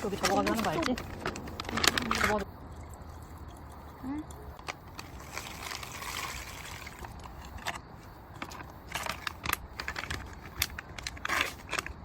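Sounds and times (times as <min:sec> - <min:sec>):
food packaging rustling and clicking: 0:00.0 - 0:02.4, 0:06.9 - 0:12.0.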